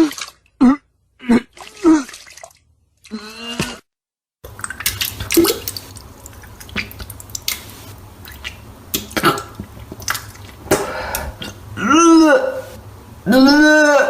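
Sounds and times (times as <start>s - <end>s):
vomit splashing into liquid: 1.5s - 2.7s, 4.4s - 11.0s
person retching: 9.0s - 9.6s, 10.7s - 12.6s.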